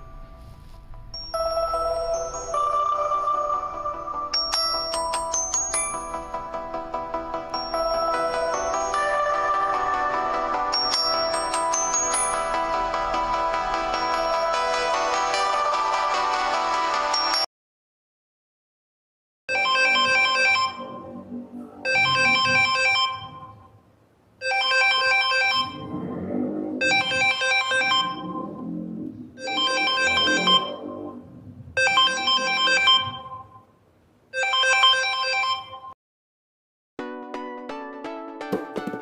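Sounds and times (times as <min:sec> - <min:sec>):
phone ringtone chime: 0:00.0 - 0:06.6, 0:07.3 - 0:13.0, 0:13.7 - 0:15.6, 0:17.0 - 0:17.5, 0:19.5 - 0:21.1, 0:21.8 - 0:23.7, 0:24.4 - 0:25.9, 0:26.8 - 0:28.5, 0:29.4 - 0:31.2, 0:31.8 - 0:33.6, 0:34.4 - 0:36.0.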